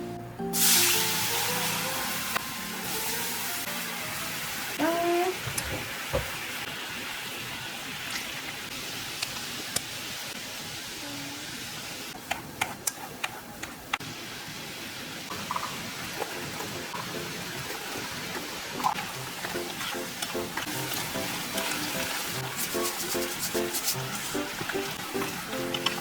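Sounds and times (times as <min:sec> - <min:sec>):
steady hiss: 0:12.9 - 0:26.0.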